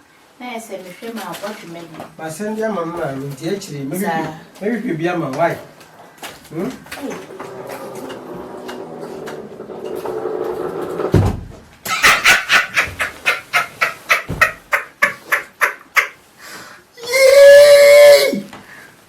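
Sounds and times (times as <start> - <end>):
person laughing: 11.9 - 16.2
long held vocal cry: 16.9 - 18.6.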